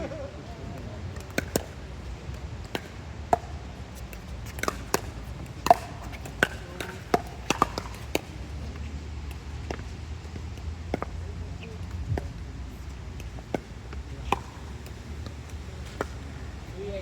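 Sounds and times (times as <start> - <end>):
paddles striking ball: 2.6 - 8.3, 13.2 - 16.2
wind rumble on microphone: 11.4 - 12.7.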